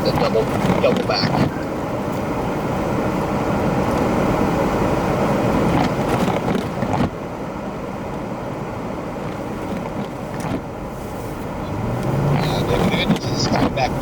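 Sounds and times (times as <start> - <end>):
vehicle engine and road noise: 0.0 - 14.0.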